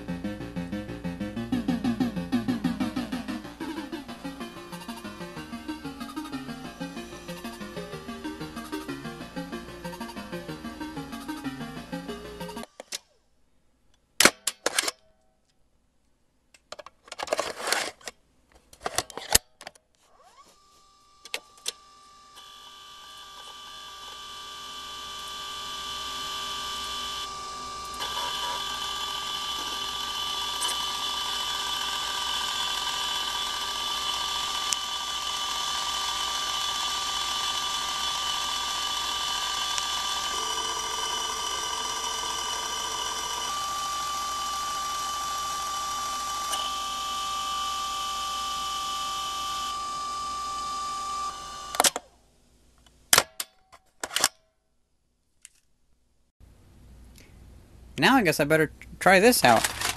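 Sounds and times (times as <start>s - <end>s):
disk drive motor whine: 0.0s - 12.7s, 20.1s - 52.0s.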